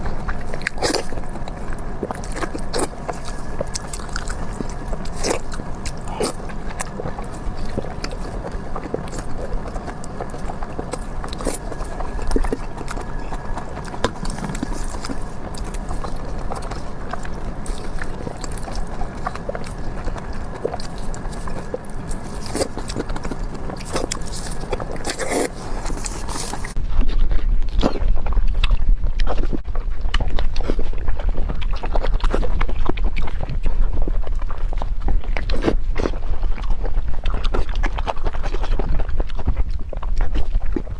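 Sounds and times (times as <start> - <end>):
person chewing with mouth open: 0.0 - 40.9
steady low rumble: 0.0 - 40.9.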